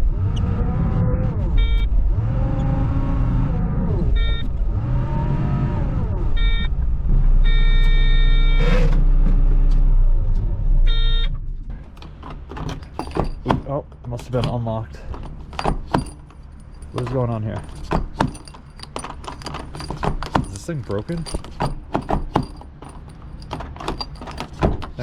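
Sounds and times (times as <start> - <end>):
loader engine revving: 0.0 - 11.2
back-up alarm beeping: 4.2 - 4.5, 6.4 - 6.7, 7.4 - 8.7, 10.9 - 11.3.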